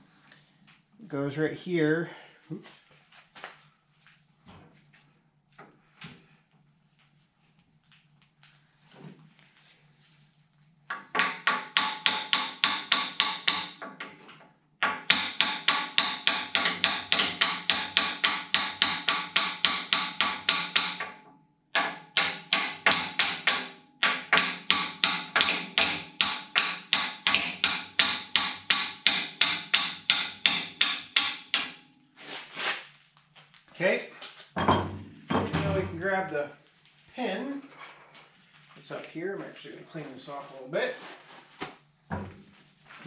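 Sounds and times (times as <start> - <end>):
hammer striking metal: 10.9 - 13.8, 14.8 - 21.2, 21.8 - 31.8.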